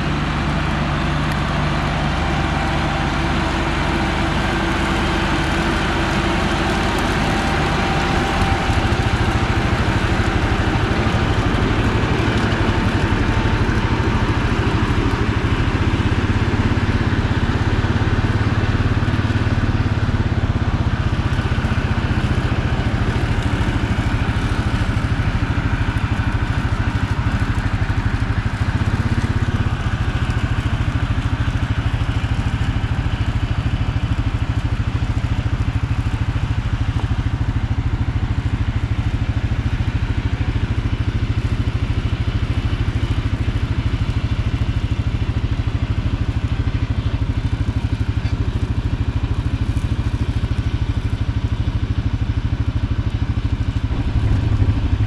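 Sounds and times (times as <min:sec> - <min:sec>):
vehicle engine droning: 0:00.0 - 0:55.0.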